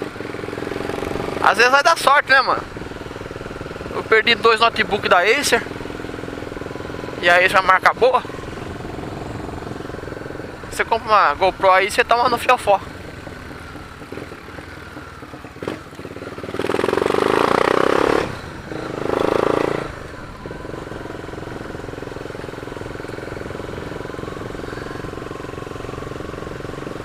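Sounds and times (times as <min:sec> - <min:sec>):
motorcycle engine revving and idling: 0:00.0 - 0:27.0.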